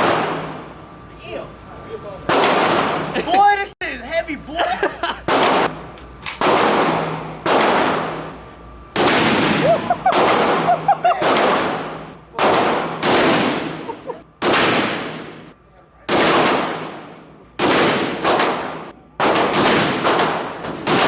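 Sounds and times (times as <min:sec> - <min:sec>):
gunshots echoing: 0:00.0 - 0:00.6, 0:02.3 - 0:03.1, 0:05.3 - 0:05.8, 0:06.4 - 0:08.3, 0:09.0 - 0:15.5, 0:16.1 - 0:21.0.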